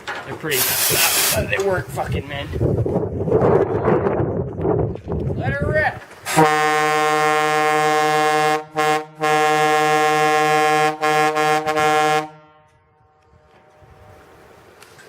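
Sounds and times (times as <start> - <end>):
truck air horns blasting: 6.3 - 13.0.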